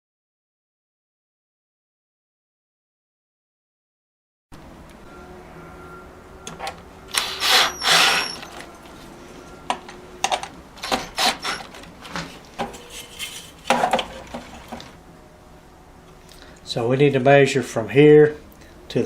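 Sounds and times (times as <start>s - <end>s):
clicks knocks and scrapes: 10.2s - 15.0s
scraping rustles: 10.8s - 15.0s.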